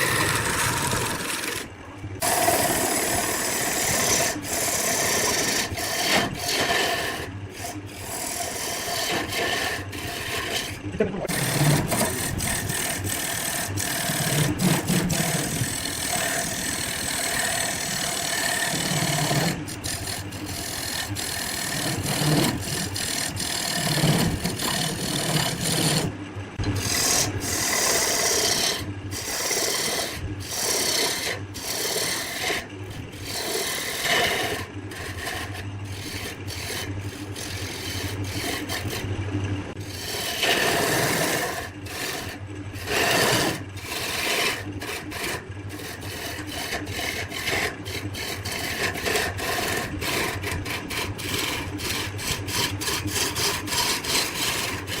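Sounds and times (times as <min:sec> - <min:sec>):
turning tool rasping on wood: 0:00.0 - 0:39.1, 0:39.7 - 0:55.0
lathe motor hum: 0:00.0 - 0:55.0.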